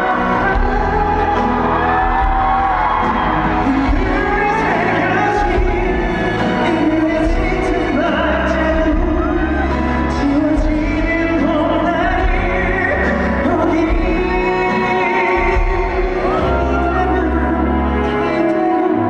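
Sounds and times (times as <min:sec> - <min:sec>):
band playing: 0:00.0 - 0:19.0
man singing: 0:00.0 - 0:19.0.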